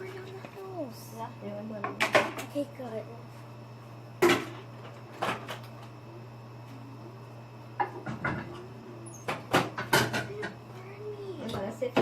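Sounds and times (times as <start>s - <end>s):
steady low hum: 0.0s - 12.0s
dishes clattering: 7.8s - 8.7s, 9.3s - 10.6s.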